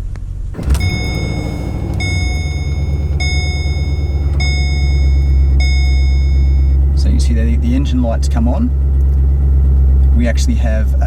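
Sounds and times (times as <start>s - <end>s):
high warning chime: 0.6s - 6.9s
car engine idling with misfire: 0.6s - 11.0s.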